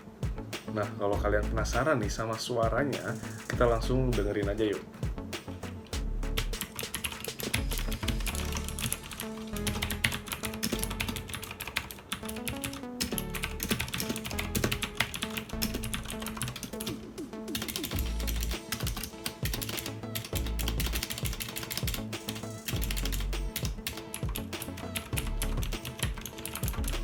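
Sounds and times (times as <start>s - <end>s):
background music: 0.0s - 27.0s
clicky mechanical keyboard typing: 6.6s - 17.0s, 17.6s - 27.0s.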